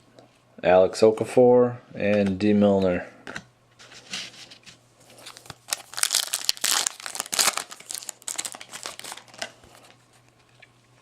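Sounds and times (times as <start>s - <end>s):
card pack wrapper crinkling: 5.1s - 10.0s.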